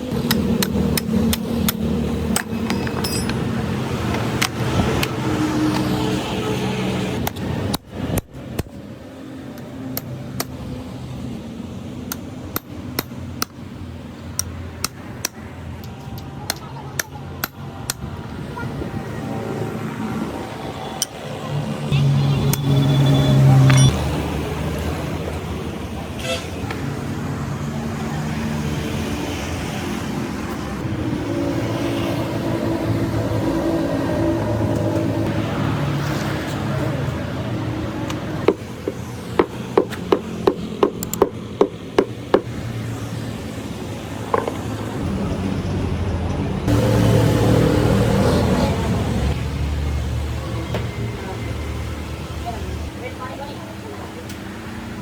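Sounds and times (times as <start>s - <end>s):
engine droning: 8.6s - 55.0s.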